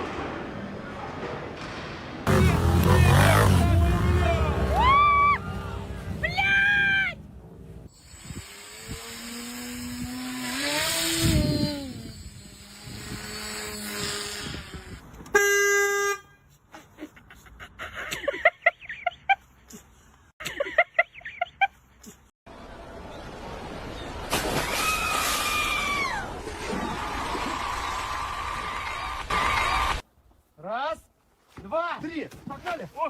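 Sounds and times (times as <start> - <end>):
motor vehicle: 2.2 - 7.9
short sharp pitched sounds: 2.3 - 4.9
horn blast: 2.3 - 6.2.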